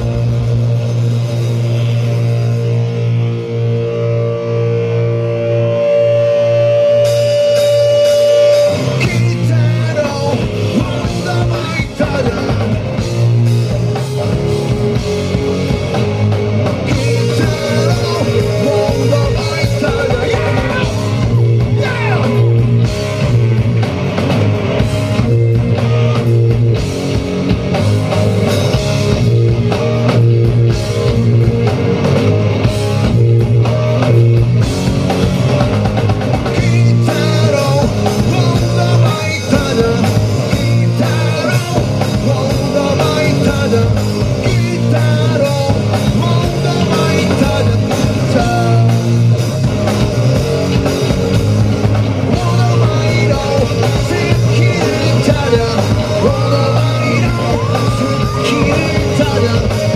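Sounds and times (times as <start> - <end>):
rock band playing live: 0.0 - 59.9
person singing: 5.6 - 13.0, 16.8 - 22.7, 36.4 - 49.2, 52.2 - 59.9.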